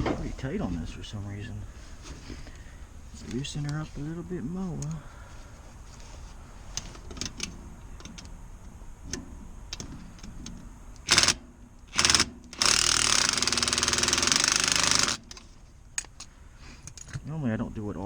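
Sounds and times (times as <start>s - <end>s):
power driver whirring: 6.8s - 15.4s.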